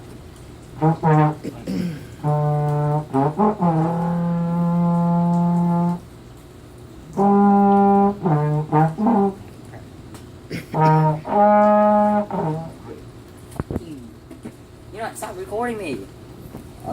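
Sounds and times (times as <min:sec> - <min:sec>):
brass instrument notes: 0:00.7 - 0:06.1, 0:07.0 - 0:09.8, 0:10.6 - 0:13.1.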